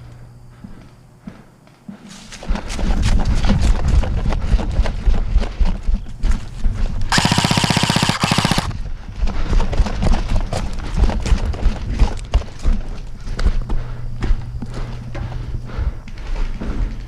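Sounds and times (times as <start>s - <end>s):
footsteps: 0.0s - 17.0s
airsoft gun full-auto burst: 7.1s - 8.8s.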